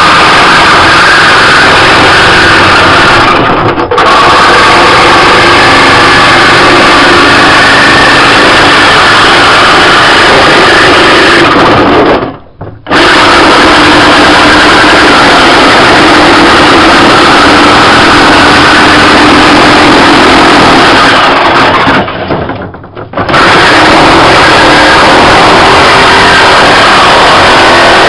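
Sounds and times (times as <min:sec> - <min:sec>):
jigsaw cutting metal: 0:00.0 - 0:28.0
motor whine: 0:12.9 - 0:21.6, 0:23.3 - 0:28.0.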